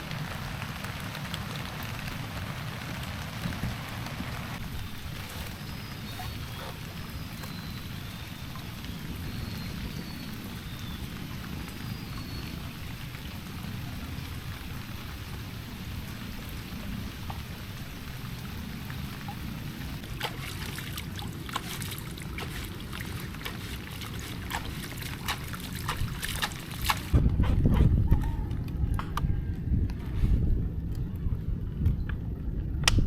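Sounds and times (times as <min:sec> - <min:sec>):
wind and rain rumble: 0:00.0 - 0:33.0
water trickling: 0:00.1 - 0:27.2
wind buffeting microphone: 0:18.8 - 0:33.0.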